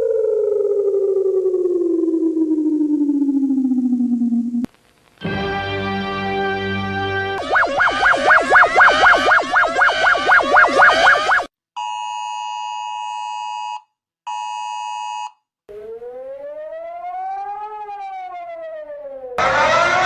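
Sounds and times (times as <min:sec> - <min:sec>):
rising and falling siren: 0:00.0 - 0:04.7, 0:07.4 - 0:11.5, 0:15.7 - 0:20.0
fast warbling alarm tone: 0:07.4 - 0:11.5, 0:15.7 - 0:20.0
two-tone attention signal: 0:07.4 - 0:11.5.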